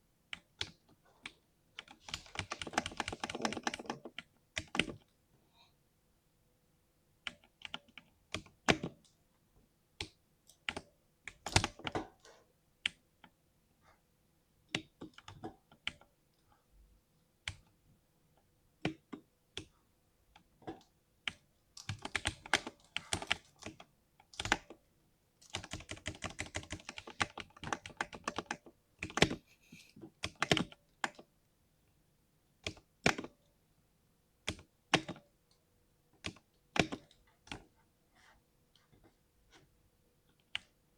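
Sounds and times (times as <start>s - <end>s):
mechanical keyboard typing: 0.3s - 5.1s, 10.0s - 12.2s, 21.3s - 24.7s, 25.4s - 29.5s, 30.2s - 31.3s, 32.6s - 33.3s, 34.5s - 35.2s.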